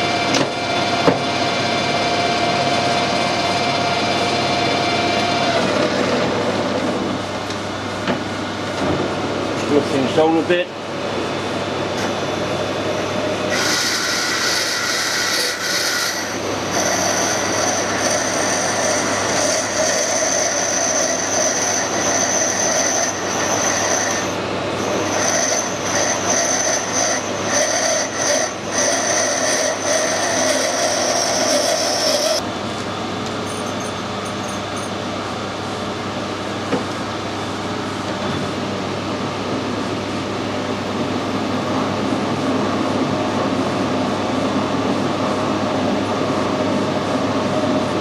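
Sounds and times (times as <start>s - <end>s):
metal lathe running: 0.0s - 7.5s, 12.2s - 32.4s
high-pitched cutting whine: 12.0s - 32.5s.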